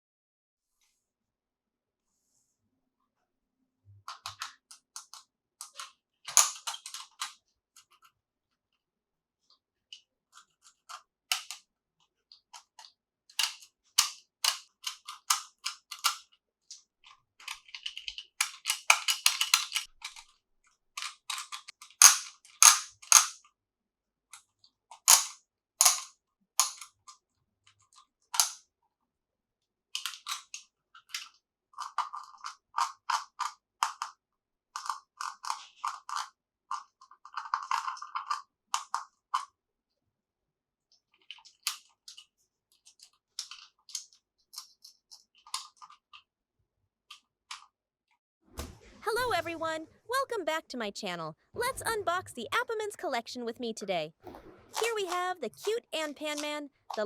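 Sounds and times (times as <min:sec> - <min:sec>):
plastic toy pieces clicking: 0:04.1 - 0:08.1, 0:10.4 - 0:11.6, 0:12.3 - 0:20.3, 0:21.0 - 0:23.4, 0:25.0 - 0:27.2, 0:27.9 - 0:28.6, 0:30.0 - 0:34.2, 0:34.8 - 0:39.5.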